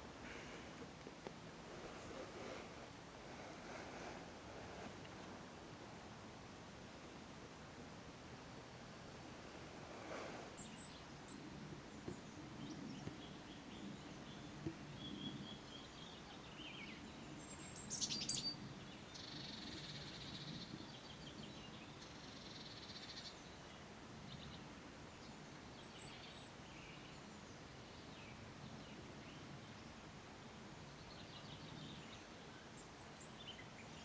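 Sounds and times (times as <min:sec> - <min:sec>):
songbirds chirping: 0:00.0 - 0:34.0
high trilling birdsong: 0:12.0 - 0:23.8.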